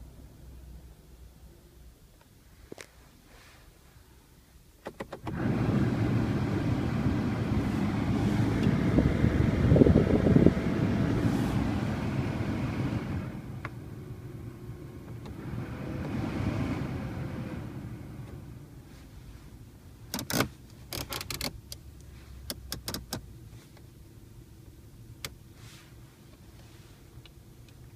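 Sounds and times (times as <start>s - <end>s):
cabin blower fan blowing air: 5.3s - 19.2s.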